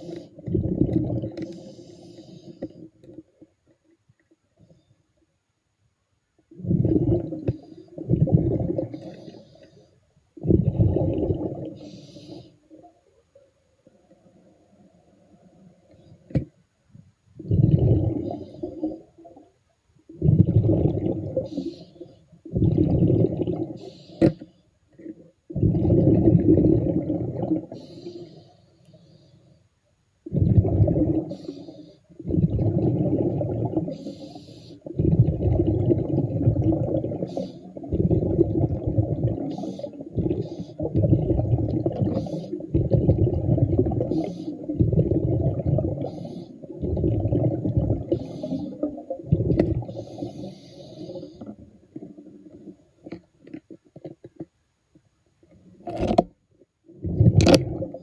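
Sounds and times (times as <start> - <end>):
underwater bubbling rumble: 0.0 - 1.6, 6.5 - 9.3, 10.4 - 11.9, 17.4 - 19.4, 20.1 - 21.7, 22.5 - 24.0, 25.0 - 27.9, 30.3 - 31.5, 32.2 - 34.2, 34.8 - 52.6, 56.9 - 58.0
faint hissing: 0.0 - 53.4.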